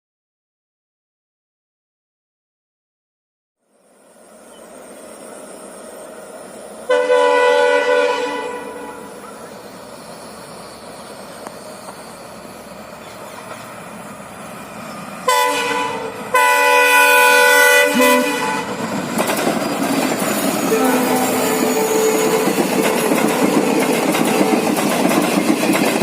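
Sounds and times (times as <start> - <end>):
train rumbling: 3.8 - 26.0
locomotive horn blasts: 6.9 - 9.2, 15.2 - 18.8, 20.6 - 24.6.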